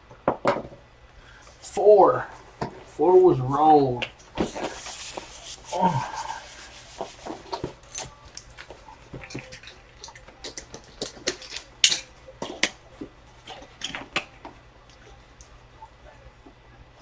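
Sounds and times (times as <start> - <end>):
cards handled clicking and rustling: 4.0 - 14.6.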